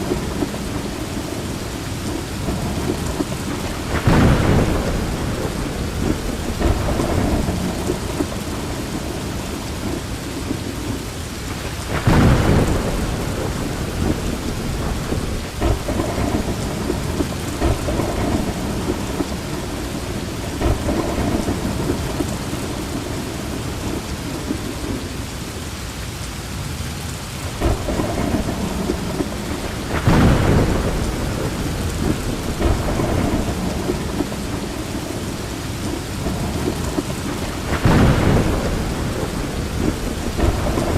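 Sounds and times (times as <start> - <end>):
rolling thunder: 0.0 - 25.2, 27.6 - 40.9
heavy rain falling: 0.0 - 40.9.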